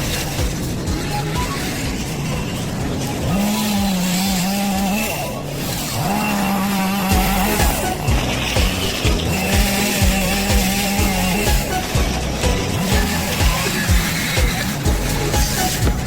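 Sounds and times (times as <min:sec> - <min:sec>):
chainsaw revving: 0:03.3 - 0:16.0.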